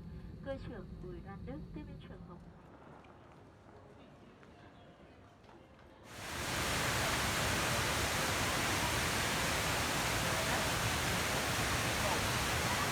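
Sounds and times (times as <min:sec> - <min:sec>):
steady rushing hiss: 0:06.1 - 0:12.9.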